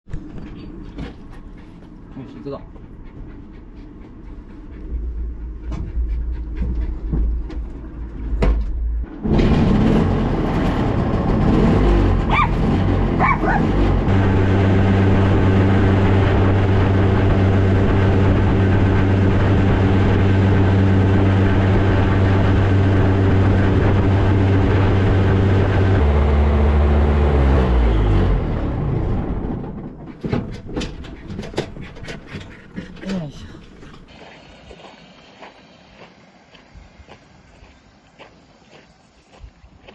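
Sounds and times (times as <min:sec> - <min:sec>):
dog whining: 0:12.3 - 0:12.6, 0:13.2 - 0:13.8.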